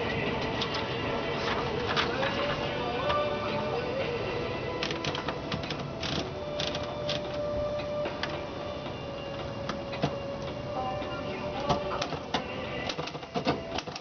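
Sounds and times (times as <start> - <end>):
typewriter clacking: 12.9 - 14.0.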